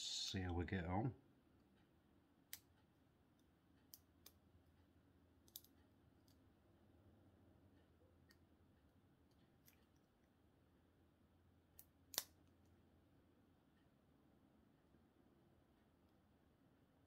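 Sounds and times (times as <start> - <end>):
faint metallic clicks of lock picking: 5.4 - 6.4.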